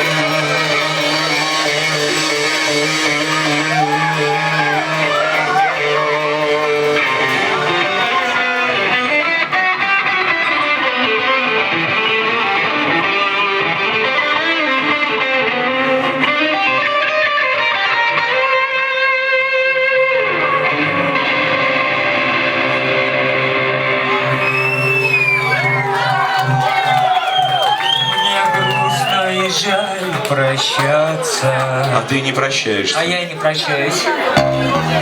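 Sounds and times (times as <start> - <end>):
drums: 0.0 - 9.3
bass guitar: 0.0 - 14.0, 34.4 - 35.0
electric guitar with effects: 0.0 - 26.9, 34.4 - 35.0.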